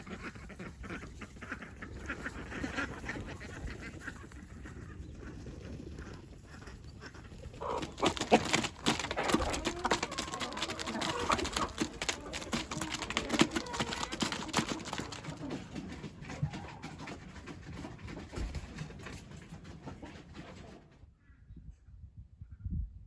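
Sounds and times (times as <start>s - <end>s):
poultry calling: 0.0s - 17.4s
clicks and rustling: 7.6s - 20.9s.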